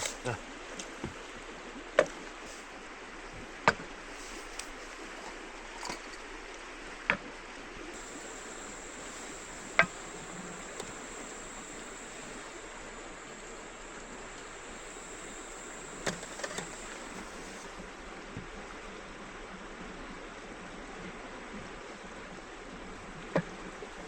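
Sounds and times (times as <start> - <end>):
sharp clicks: 8.0 - 17.7
faint high steady tone: 8.0 - 17.8
river flowing: 8.0 - 18.2.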